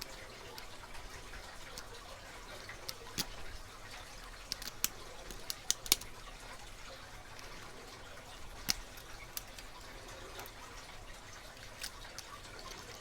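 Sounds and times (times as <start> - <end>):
faint metallic lock pick clicks: 0.1 - 6.3, 8.4 - 10.6.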